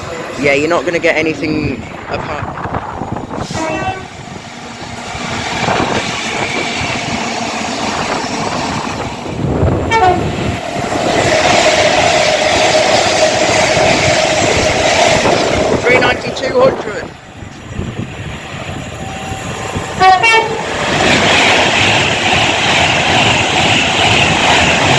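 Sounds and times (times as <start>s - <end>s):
rush of passing train: 0.0s - 24.9s
train horn: 3.4s - 4.1s, 9.9s - 10.3s, 20.0s - 20.6s.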